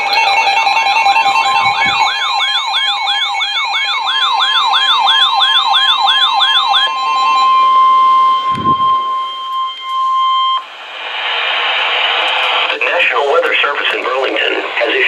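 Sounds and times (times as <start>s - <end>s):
electronic siren yelp: 0.0s - 10.7s
steady single alarm tone: 0.0s - 10.8s.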